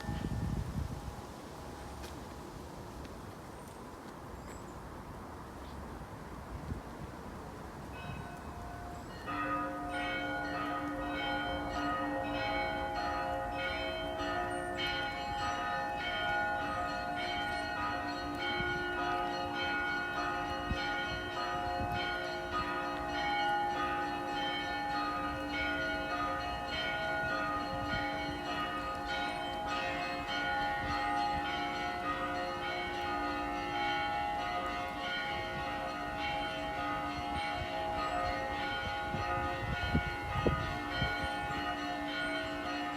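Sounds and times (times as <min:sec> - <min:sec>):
church bells ringing a peal: 0:00.0 - 0:00.5, 0:07.9 - 0:42.9.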